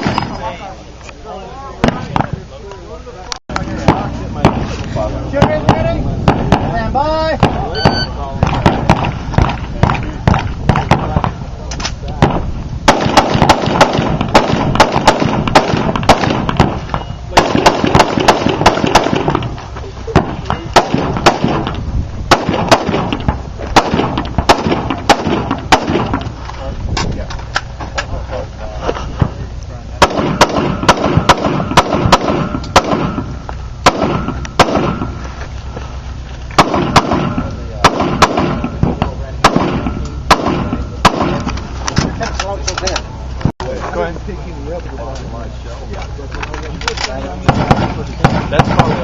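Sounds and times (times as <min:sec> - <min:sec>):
gunshots: 0:00.0 - 0:00.6, 0:01.8 - 0:02.4, 0:03.6 - 0:11.5, 0:12.2 - 0:26.4, 0:30.0 - 0:35.2, 0:36.6 - 0:42.2, 0:47.0 - 0:49.0
rapid semi-automatic gunfire: 0:12.2 - 0:19.5, 0:20.1 - 0:26.2, 0:30.0 - 0:35.1, 0:36.6 - 0:41.5, 0:47.4 - 0:49.0.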